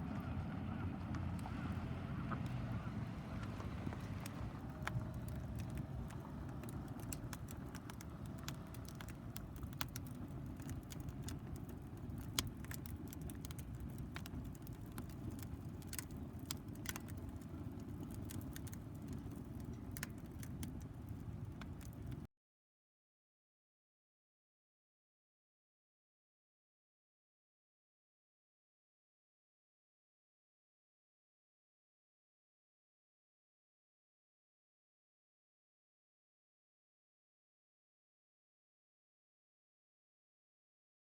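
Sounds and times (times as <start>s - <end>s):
wood fire crackling: 0.0s - 22.3s.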